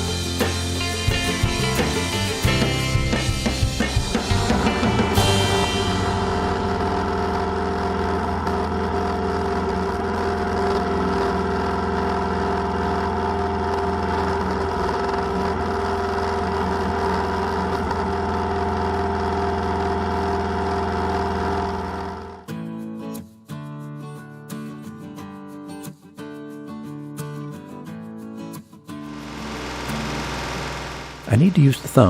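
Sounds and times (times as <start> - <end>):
tractor diesel engine running: 0.0 - 22.4, 29.1 - 32.0.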